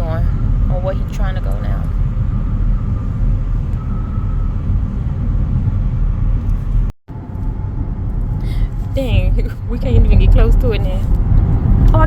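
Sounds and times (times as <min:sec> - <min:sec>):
car engine rumble inside cabin: 0:00.0 - 0:12.0
road noise: 0:00.0 - 0:12.0.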